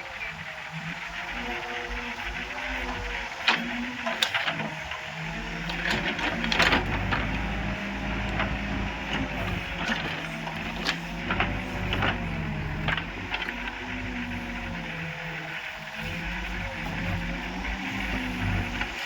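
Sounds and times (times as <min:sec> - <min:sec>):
backhoe diesel engine under load: 0:00.0 - 0:19.0.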